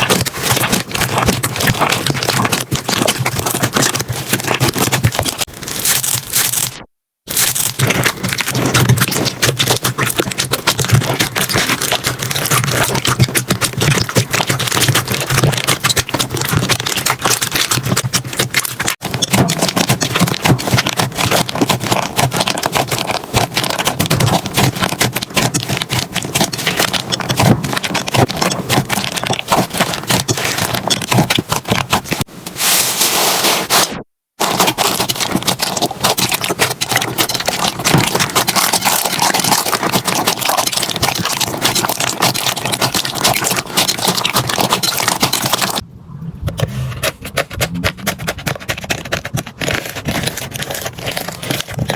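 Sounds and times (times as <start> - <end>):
slime crackling and popping: 0.0 - 45.8.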